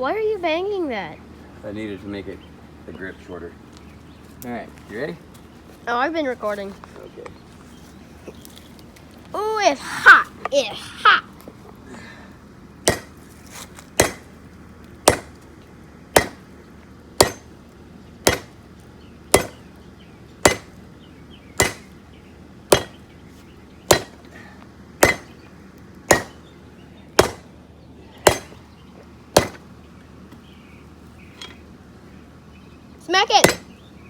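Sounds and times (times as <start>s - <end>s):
hammer striking hot steel: 12.8s - 13.2s, 14.0s - 14.3s, 15.0s - 15.4s, 16.2s - 16.4s, 17.2s - 17.5s, 18.2s - 18.6s, 19.3s - 19.6s, 20.4s - 20.8s, 21.6s - 22.0s, 22.7s - 23.0s, 23.9s - 24.2s, 25.0s - 25.4s, 26.1s - 26.4s, 27.2s - 27.5s, 28.2s - 28.6s, 29.4s - 29.6s, 33.4s - 33.7s.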